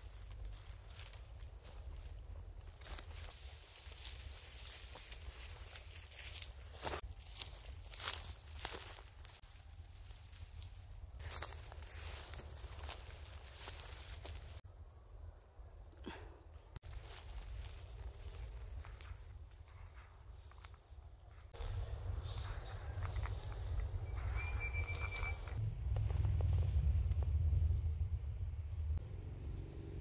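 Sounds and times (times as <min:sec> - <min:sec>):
insects trilling: 0:00.0 - 0:30.0
low rumble: 0:25.5 - 0:29.5.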